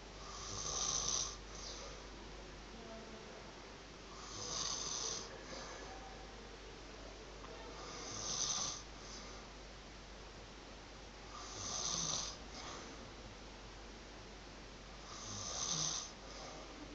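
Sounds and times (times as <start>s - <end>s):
person snoring: 0.2s - 1.9s, 4.1s - 5.8s, 7.8s - 9.3s, 11.3s - 13.0s, 15.1s - 16.6s.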